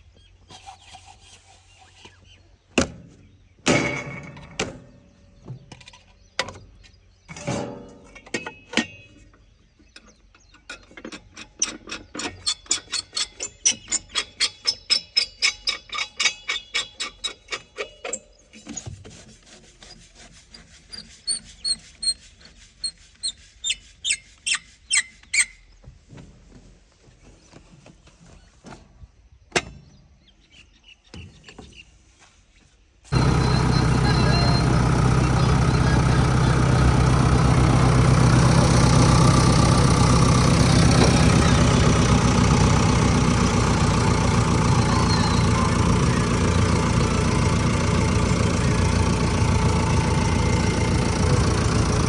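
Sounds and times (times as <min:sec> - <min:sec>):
diesel engine running: 0:33.1 - 0:52.0.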